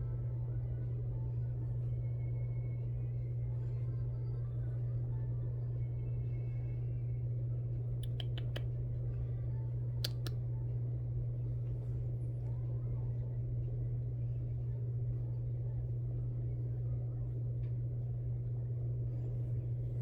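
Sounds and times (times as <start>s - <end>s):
steady low hum: 0.0s - 20.0s
short clicks: 8.0s - 8.7s, 10.0s - 10.4s.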